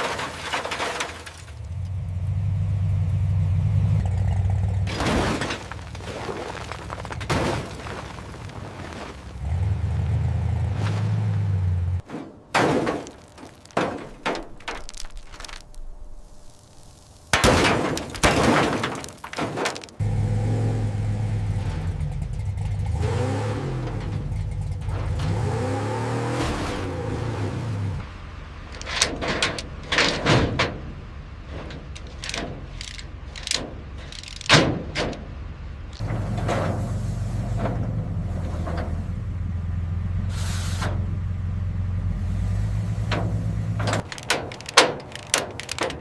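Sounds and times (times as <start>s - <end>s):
loud impacts: 12.0s - 20.0s
sharp knocks and clanks: 12.2s - 15.7s, 17.4s - 20.0s, 28.8s - 35.4s, 43.0s - 46.0s.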